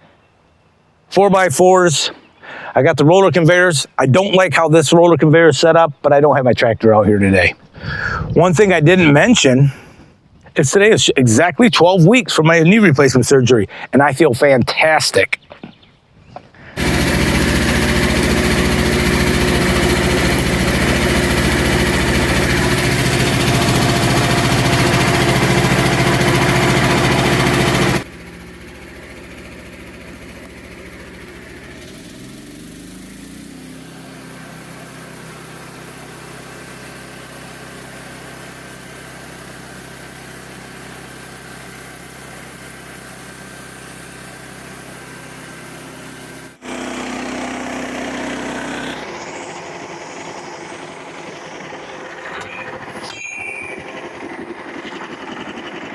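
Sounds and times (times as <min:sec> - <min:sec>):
small gasoline engine running: 0:16.6 - 0:55.9.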